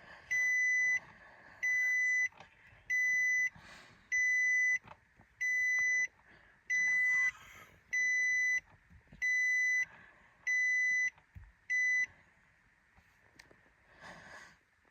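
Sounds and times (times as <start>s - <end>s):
car warning chime beeps: 0.3s - 12.1s.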